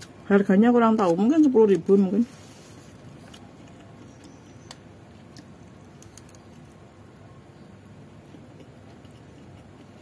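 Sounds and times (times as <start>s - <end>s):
low background noise: 0.0s - 10.0s
quiet chewing: 2.3s - 10.0s.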